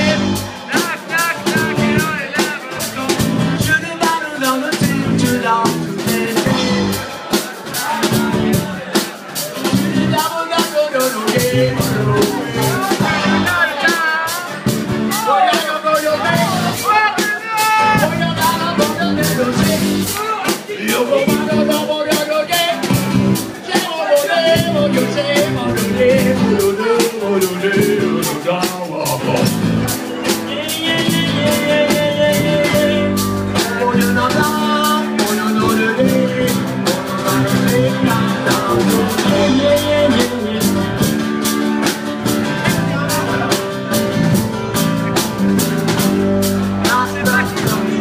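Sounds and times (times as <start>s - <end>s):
bass guitar: 0.0s - 48.0s
drums with cymbal beat: 0.0s - 48.0s
rhythm guitar chords: 0.0s - 48.0s
lead guitar with bending notes: 24.4s - 48.0s.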